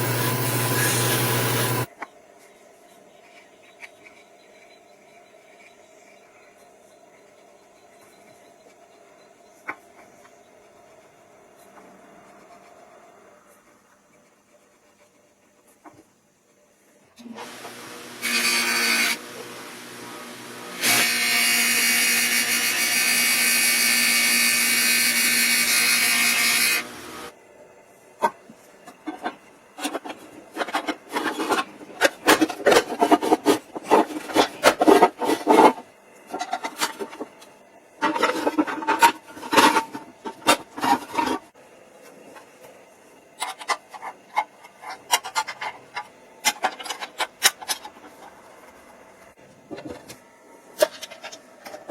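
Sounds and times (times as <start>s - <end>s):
power tool running: 0.0s - 1.9s, 17.2s - 27.3s.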